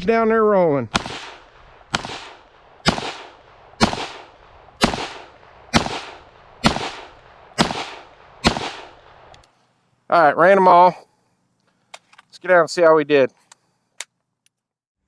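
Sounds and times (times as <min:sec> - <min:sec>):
pistol shots with echo: 0:00.9 - 0:09.2.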